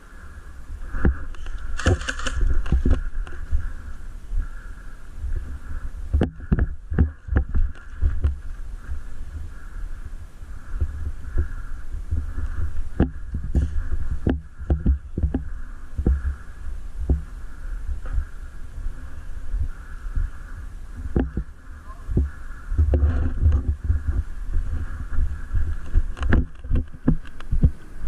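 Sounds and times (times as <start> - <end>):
faint steady hum: 0.0 - 28.0
low thumps and knocks: 1.0 - 3.7, 5.4 - 8.5, 10.7 - 16.4, 17.0 - 18.3, 19.6 - 27.8.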